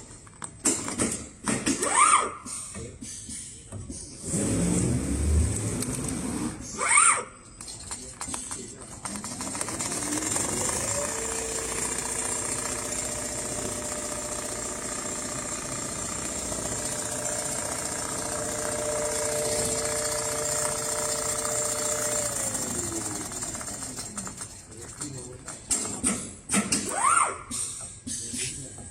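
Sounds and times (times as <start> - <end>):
sewing machine motor whirring: 8.5 - 25.1.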